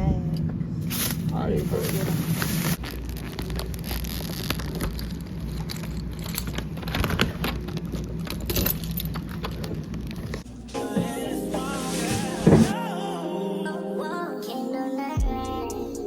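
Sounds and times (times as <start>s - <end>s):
plastic bags rustling: 0.8s - 12.8s.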